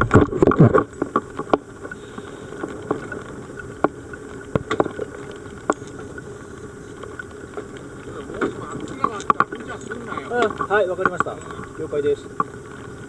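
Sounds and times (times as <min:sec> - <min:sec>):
boat engine running: 0:00.0 - 0:13.0
sharp knocks and clicks: 0:10.4 - 0:11.4.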